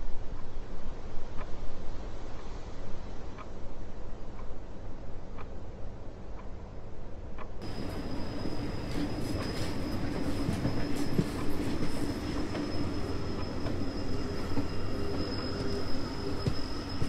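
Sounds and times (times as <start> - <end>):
train wheels rumbling on rails: 7.5 - 17.0
high whine: 7.6 - 17.0.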